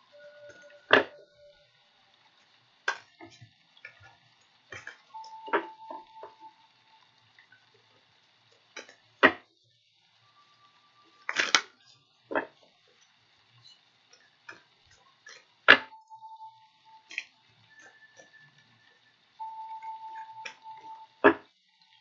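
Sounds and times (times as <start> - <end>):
brief steady tones: 0.0 - 1.8, 5.1 - 7.1, 15.8 - 22.0
faint thin high tone: 0.0 - 1.8, 5.1 - 7.0, 10.2 - 11.9, 15.9 - 21.3.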